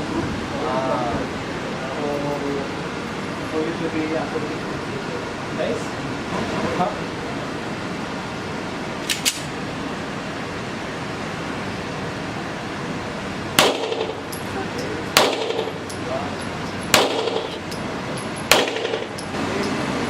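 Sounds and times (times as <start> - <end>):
handgun shots with echo: 9.0 - 9.5, 13.6 - 14.2, 15.2 - 15.7, 16.9 - 17.6, 18.5 - 19.1.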